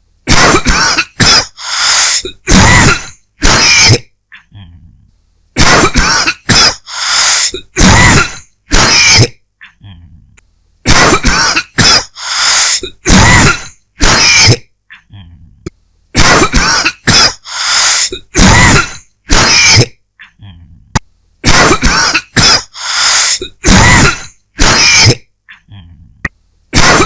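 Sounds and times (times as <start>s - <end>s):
person coughing: 0.3s - 4.7s, 5.6s - 10.0s, 10.9s - 15.1s, 16.2s - 20.0s, 21.4s - 25.9s, 26.8s - 27.0s.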